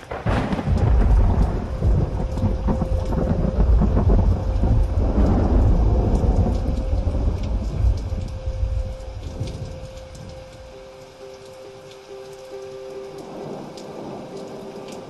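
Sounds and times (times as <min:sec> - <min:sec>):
thunder rumbling: 0:00.0 - 0:11.9
rain falling: 0:00.0 - 0:15.0.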